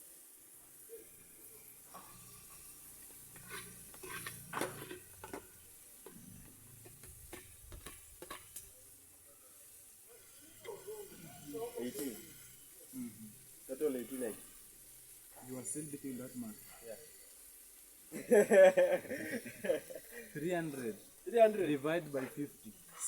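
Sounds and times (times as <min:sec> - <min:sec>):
eggs sizzling in a frying pan: 0:00.0 - 0:23.0
spoon scraping and knocking pan: 0:01.8 - 0:08.7.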